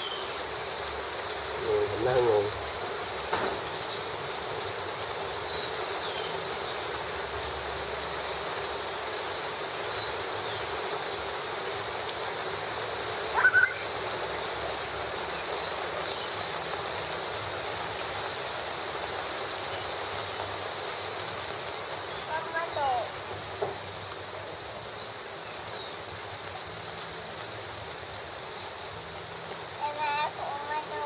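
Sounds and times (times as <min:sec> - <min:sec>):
steady rain falling: 0:00.0 - 0:31.0.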